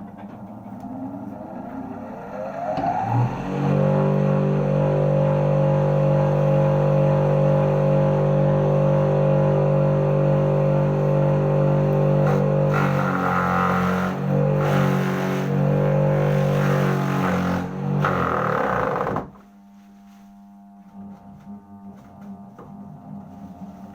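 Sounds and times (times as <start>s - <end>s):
electric motor humming: 3.6s - 19.4s.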